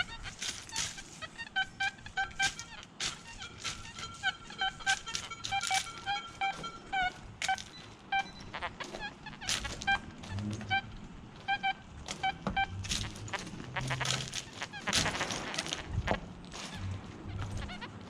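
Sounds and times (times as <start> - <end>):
coil scraping across ground: 0.0 - 11.2
metal detector beeps: 0.0 - 15.8
metal detector held tone: 1.6 - 8.8.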